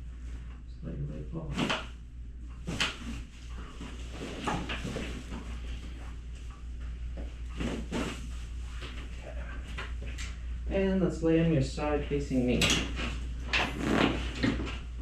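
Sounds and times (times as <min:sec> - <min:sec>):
low room hum: 0:00.0 - 0:15.0
body rustling on table: 0:02.6 - 0:09.2.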